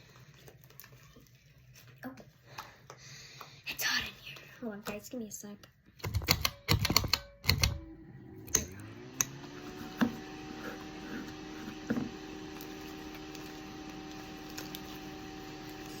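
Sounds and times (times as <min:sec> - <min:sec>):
electric fan motor humming: 0:06.8 - 0:16.0.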